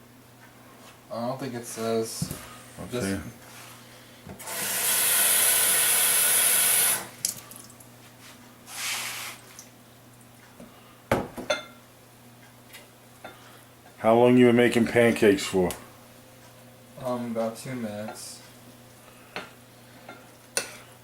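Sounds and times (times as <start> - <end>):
kitchen tap running water: 4.6 - 7.8.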